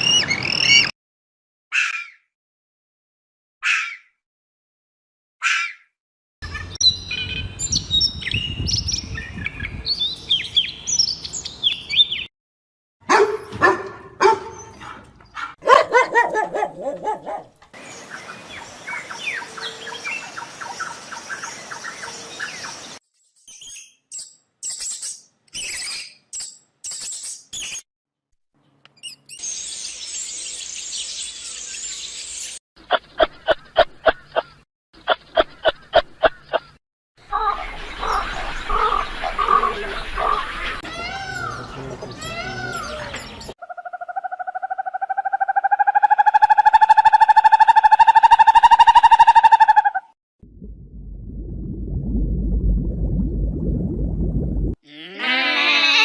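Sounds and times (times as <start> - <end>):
birds chirping: 13.1 - 23.0, 28.6 - 43.8
animal calls: 37.3 - 50.1.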